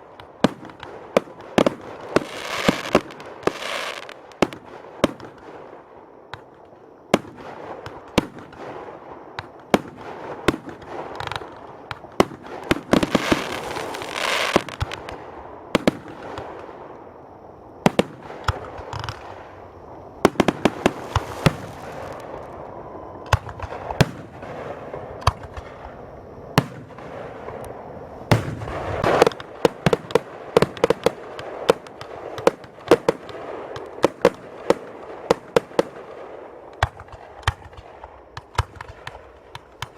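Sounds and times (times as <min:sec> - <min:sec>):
fireworks bangs: 0:00.2 - 0:05.7, 0:07.2 - 0:16.9, 0:20.2 - 0:39.9
fireworks hiss: 0:01.9 - 0:04.2, 0:12.5 - 0:15.2, 0:20.2 - 0:22.7.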